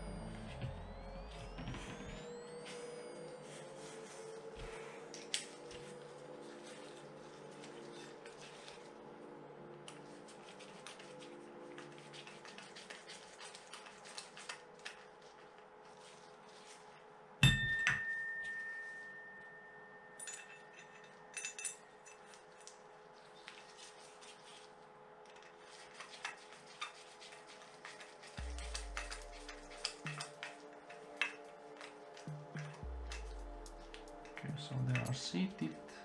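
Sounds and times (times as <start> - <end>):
small metal parts clicking: 28.4 - 35.2.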